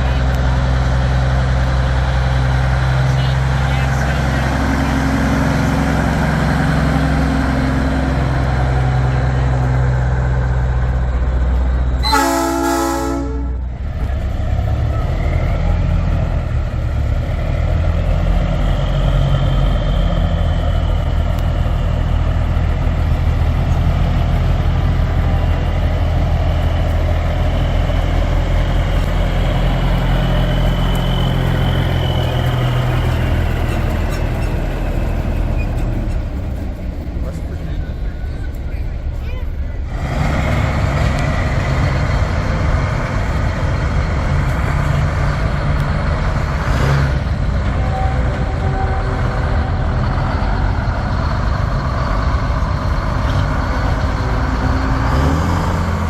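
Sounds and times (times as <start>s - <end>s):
diesel truck engines running: 0.0s - 56.0s
loud air horn blast: 12.0s - 13.6s.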